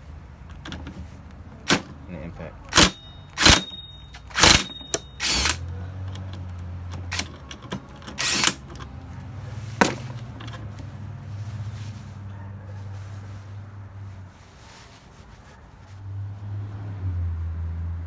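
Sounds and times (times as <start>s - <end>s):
pneumatic impact wrench bursts: 1.7s - 1.9s, 2.7s - 5.6s, 7.0s - 7.4s, 8.1s - 8.7s
sharp click: 2.7s - 5.6s, 8.2s - 8.6s.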